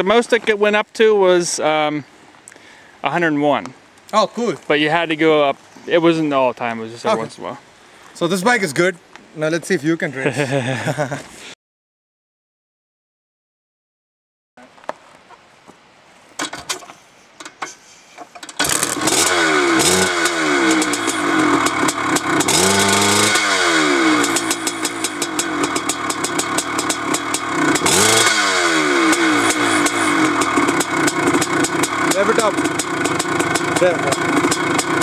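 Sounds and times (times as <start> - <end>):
dirt bike engine revving: 18.6 - 35.0.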